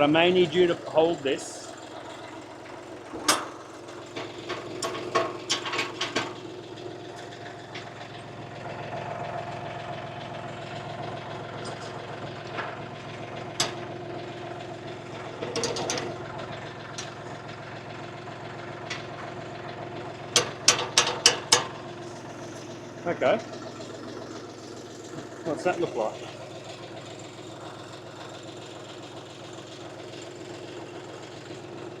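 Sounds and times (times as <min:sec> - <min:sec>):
tractor diesel engine idling: 0:00.0 - 0:32.0
metal hitch parts clanking: 0:01.8 - 0:09.2, 0:10.5 - 0:27.0.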